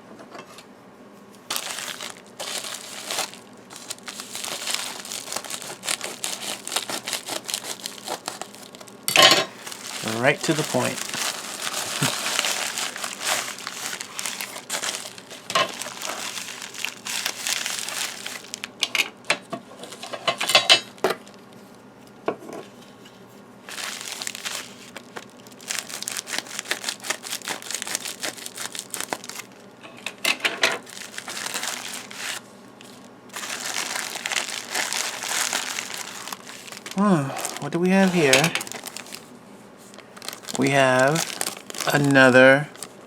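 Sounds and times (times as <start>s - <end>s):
packaging crinkling and tearing: 1.5s - 19.0s, 23.7s - 29.6s, 30.8s - 43.0s.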